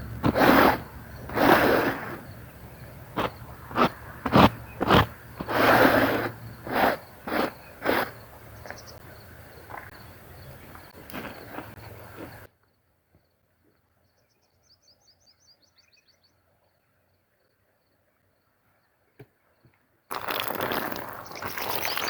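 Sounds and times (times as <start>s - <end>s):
scrubbing wet carpet: 0.2s - 2.2s, 20.1s - 22.0s.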